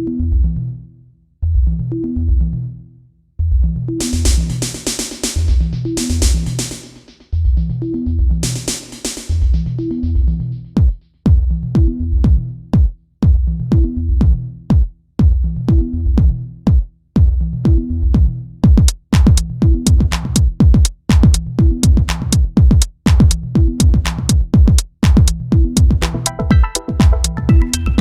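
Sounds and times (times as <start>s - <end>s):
electronic music with drum-machine beat: 4.0s - 28.0s
bright sharp percussion: 26.0s - 28.0s.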